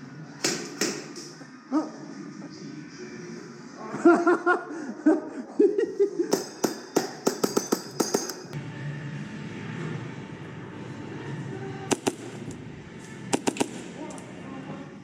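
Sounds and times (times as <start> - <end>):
rapid airsoft gun shots: 11.9 - 12.5, 13.3 - 14.0.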